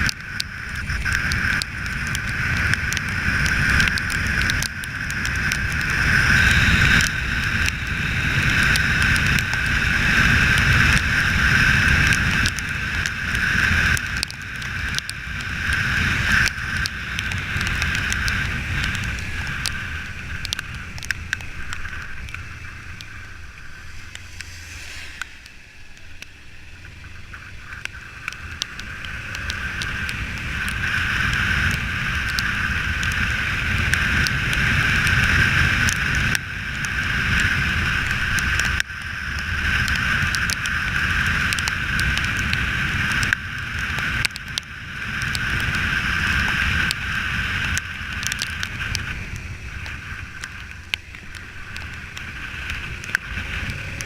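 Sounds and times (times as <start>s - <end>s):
motorcycle engine: 0.0s - 42.1s
wind noise: 0.0s - 54.0s.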